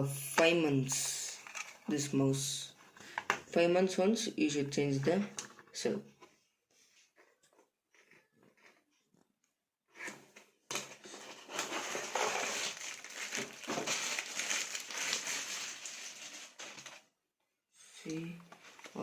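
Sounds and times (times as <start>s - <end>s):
plastic crinkling and rustling: 0.9s - 1.9s, 10.7s - 17.1s.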